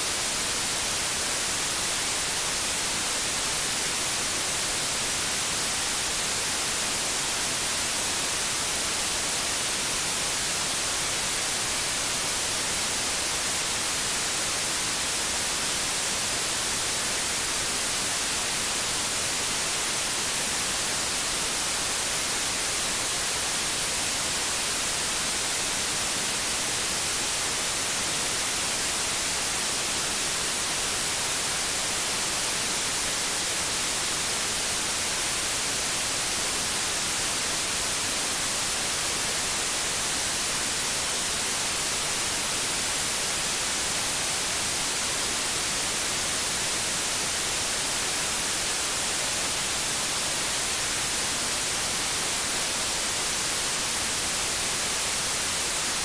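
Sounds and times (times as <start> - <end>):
white noise hiss: 0.0 - 56.0.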